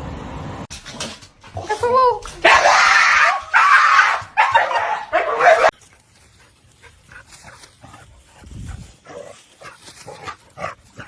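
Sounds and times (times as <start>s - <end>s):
dog barking and whimpering: 2.4s - 5.8s.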